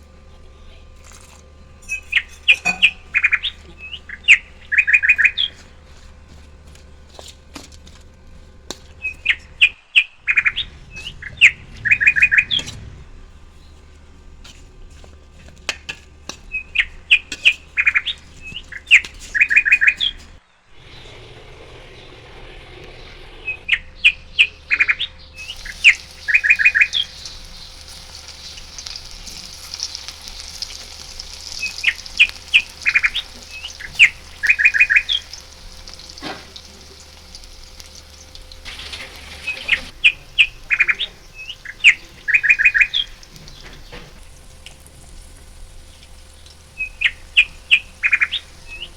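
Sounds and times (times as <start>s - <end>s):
steady hiss and sizzle: 0.0s - 48.9s
songbird chirps and trill: 16.3s - 38.4s, 39.4s - 44.2s, 45.9s - 48.9s.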